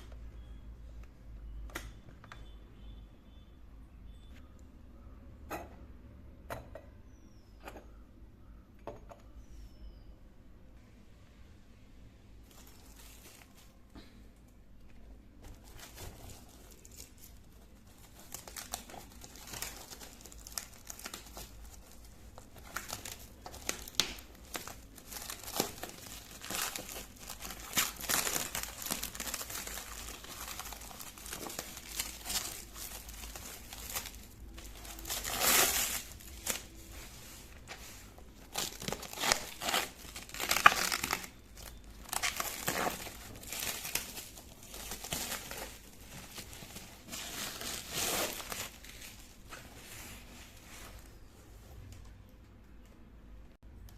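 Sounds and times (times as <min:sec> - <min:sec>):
packaging crinkling and rustling: 0:12.4 - 0:13.9, 0:14.8 - 0:51.3.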